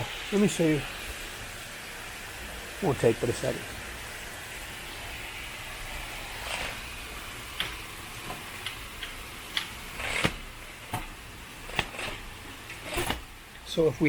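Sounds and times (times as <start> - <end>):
balcony blind clicking: 5.0 - 13.4
blind rustling: 5.0 - 13.4.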